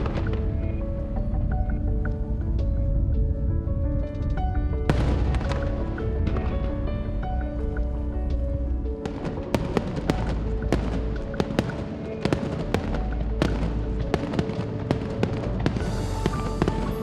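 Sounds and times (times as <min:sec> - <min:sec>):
fireworks booming: 0:00.0 - 0:01.5, 0:04.8 - 0:07.4, 0:09.0 - 0:17.0
fireworks crackling and banging: 0:00.0 - 0:01.5, 0:04.2 - 0:07.2, 0:09.0 - 0:17.0
background music: 0:00.0 - 0:17.0.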